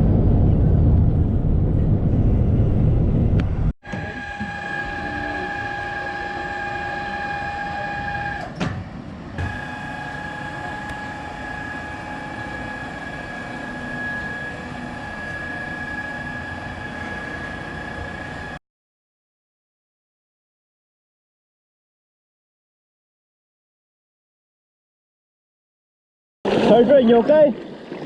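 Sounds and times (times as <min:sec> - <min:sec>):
wind noise: 0:00.0 - 0:04.9
water noise: 0:00.0 - 0:08.6, 0:09.2 - 0:18.6, 0:26.5 - 0:28.0
boat engine running: 0:00.0 - 0:18.6.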